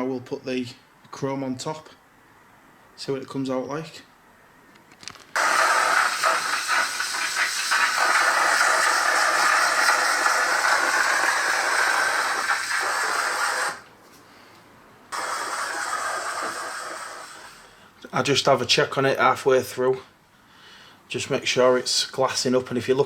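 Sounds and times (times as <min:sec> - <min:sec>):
compressed air spray hiss: 0:05.4 - 0:13.9, 0:15.1 - 0:17.8.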